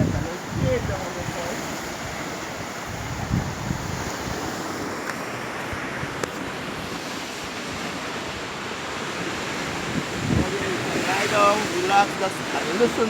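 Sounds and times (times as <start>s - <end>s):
sea waves splashing on rocks: 0.0s - 13.0s
wind buffeting microphone: 0.0s - 13.0s.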